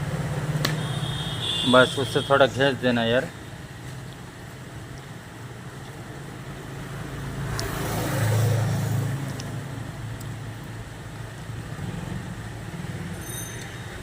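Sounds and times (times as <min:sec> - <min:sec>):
vehicle passing by: 0:06.4 - 0:10.4.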